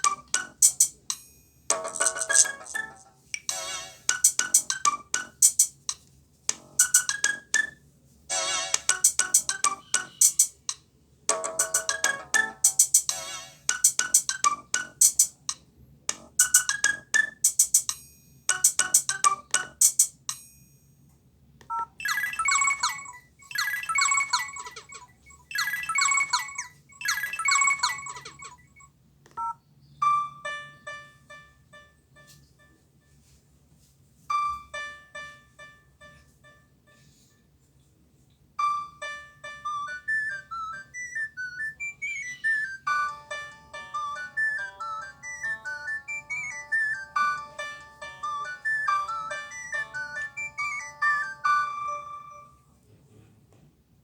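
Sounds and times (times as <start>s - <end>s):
percussive ringtone tune: 0.0s - 5.8s, 6.5s - 10.7s, 11.3s - 15.4s, 16.1s - 20.8s, 21.7s - 32.8s, 34.3s - 37.2s, 38.6s - 52.7s
ringtone of falling notes: 0.0s - 5.8s, 6.6s - 10.7s, 11.3s - 15.4s, 16.1s - 20.8s, 21.7s - 33.4s, 34.3s - 37.4s, 38.6s - 52.7s
two-note beep: 39.8s - 52.6s.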